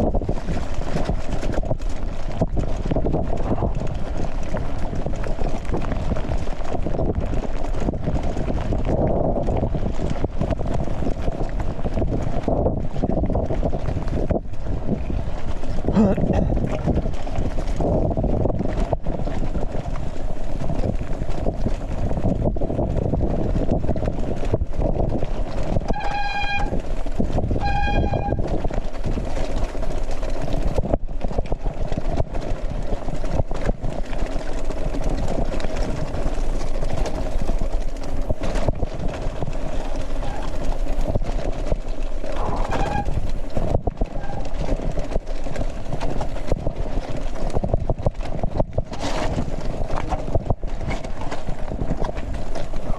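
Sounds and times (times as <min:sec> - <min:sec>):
wind rumble on microphone: 0:00.0 - 0:52.9
horn beeps: 0:27.6 - 0:28.4
mountain bike rattling clicks: 0:28.4 - 0:30.9, 0:31.5 - 0:52.9.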